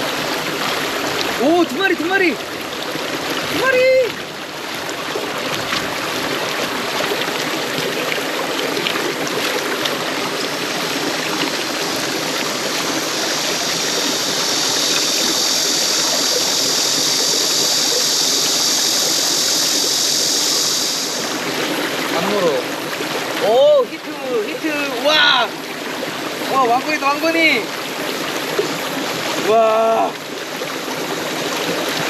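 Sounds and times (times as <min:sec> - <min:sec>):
water rushing over rocks: 0:00.0 - 0:32.0
bright hiss: 0:11.2 - 0:21.5.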